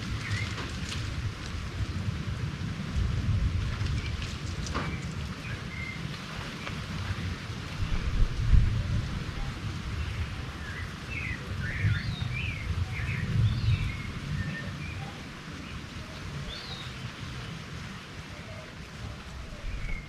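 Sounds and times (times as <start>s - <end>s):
birds chirping: 4.8s - 8.3s, 9.3s - 20.0s.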